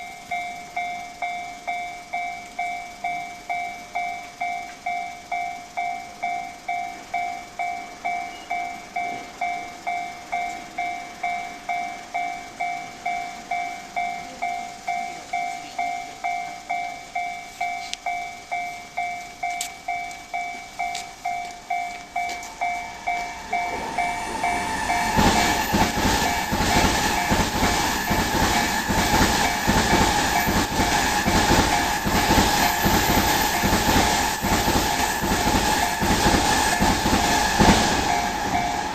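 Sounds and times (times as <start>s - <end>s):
level-crossing bell clanging: 0.0s - 38.9s
train wheels clattering over rail joints: 19.4s - 38.9s.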